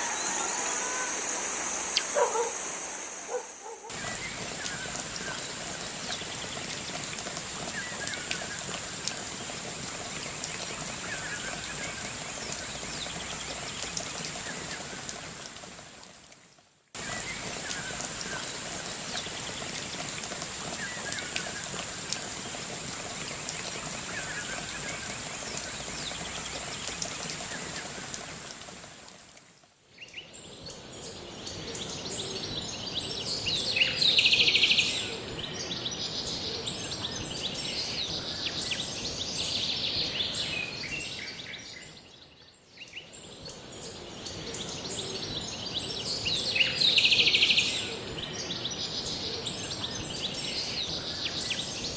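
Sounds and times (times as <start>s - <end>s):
birds calling: 0.0s - 4.0s
high insect drone: 0.0s - 4.2s, 30.0s - 41.5s
soft hiss: 0.0s - 11.8s, 17.0s - 51.9s.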